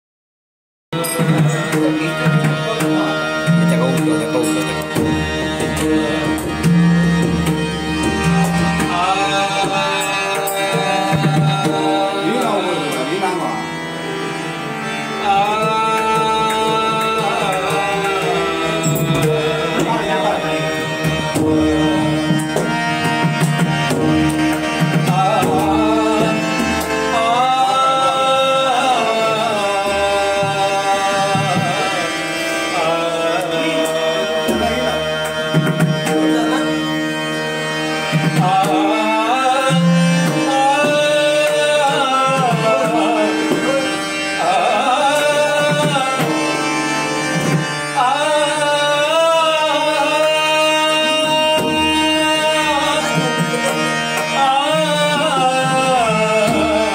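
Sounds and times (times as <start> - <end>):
person singing: 0.9 - 13.6, 14.8 - 56.9
sustained instrumental notes: 0.9 - 56.9
hand drum rhythm: 1.0 - 12.6, 15.4 - 26.9, 33.8 - 36.9.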